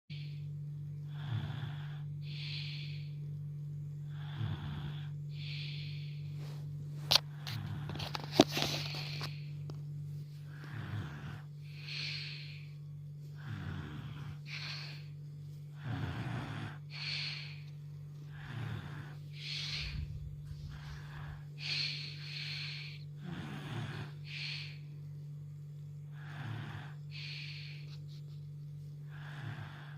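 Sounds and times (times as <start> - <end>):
steady low hum: 0.1 - 29.9
child snoring: 1.0 - 3.2, 4.0 - 6.3, 7.3 - 9.5, 10.4 - 24.9, 26.1 - 28.0, 29.0 - 29.9.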